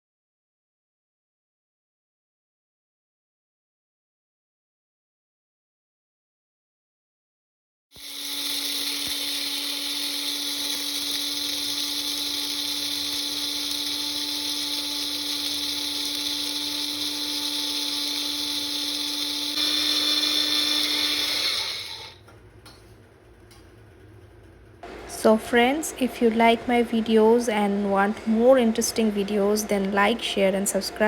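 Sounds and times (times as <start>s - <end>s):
blender motor whining: 8.0s - 22.2s.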